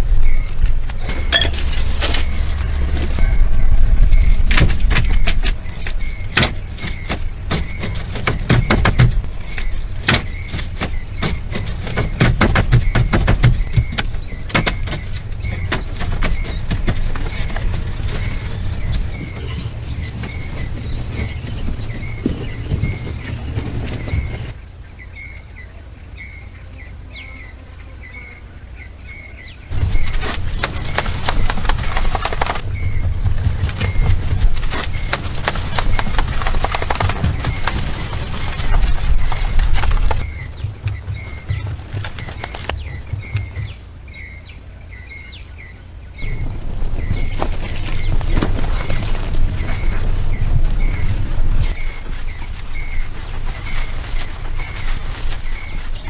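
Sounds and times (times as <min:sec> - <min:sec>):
heavy low rumble: 0:00.0 - 0:25.2, 0:29.7 - 0:56.0
small bird chirping: 0:00.0 - 0:56.0
sharp knocks and clicks: 0:04.1 - 0:24.6, 0:29.7 - 0:43.9
tapping: 0:29.7 - 0:43.9.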